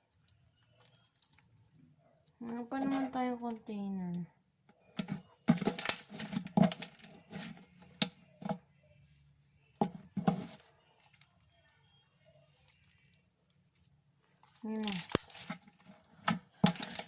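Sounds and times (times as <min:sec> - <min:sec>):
plastic containers clicking and knocking: 0:04.9 - 0:08.7, 0:09.8 - 0:10.7, 0:15.0 - 0:17.0.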